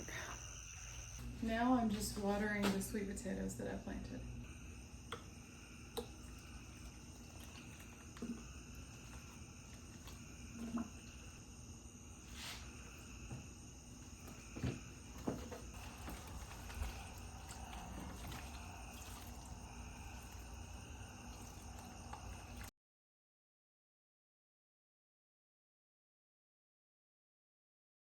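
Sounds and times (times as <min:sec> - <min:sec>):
night insects chorus: 0:00.0 - 0:03.0, 0:04.4 - 0:22.7.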